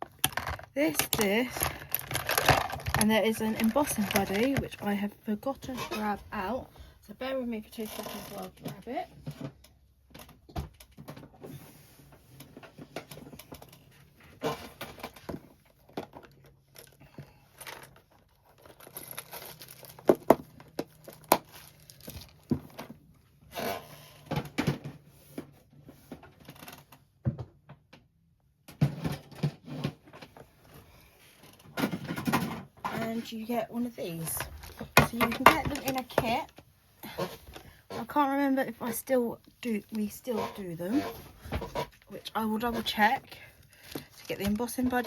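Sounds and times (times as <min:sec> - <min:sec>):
packaging rustling: 0:17.6 - 0:22.5.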